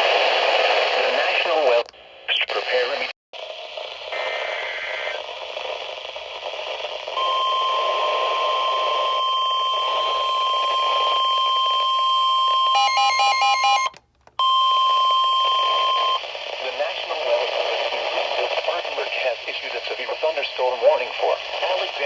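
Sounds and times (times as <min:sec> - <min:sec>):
radio hiss: 0:00.0 - 0:09.0, 0:15.6 - 0:22.0
loud steady alert beep: 0:08.6 - 0:16.2.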